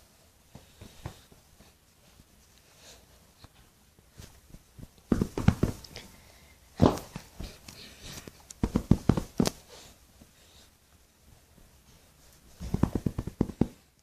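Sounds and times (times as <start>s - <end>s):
soft knocks and taps: 12.6s - 13.8s.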